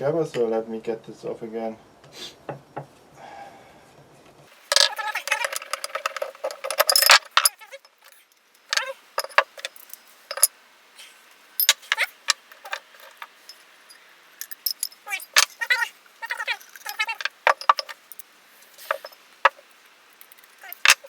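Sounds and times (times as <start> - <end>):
metal parts clinking and clanking: 4.6 - 10.5, 11.6 - 21.0.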